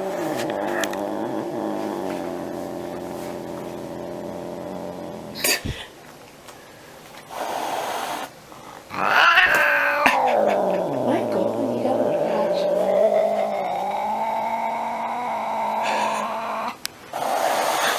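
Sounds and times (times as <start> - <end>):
angry cat yowling: 0.0 - 4.4, 8.9 - 16.8
cat hissing: 0.0 - 5.9, 7.3 - 8.3, 8.9 - 17.9.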